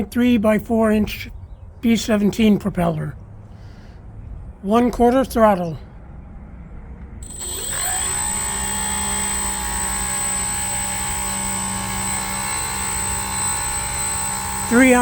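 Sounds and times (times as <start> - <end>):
electric motor spinning propeller: 7.2 - 15.0
high thin whine: 7.2 - 15.0.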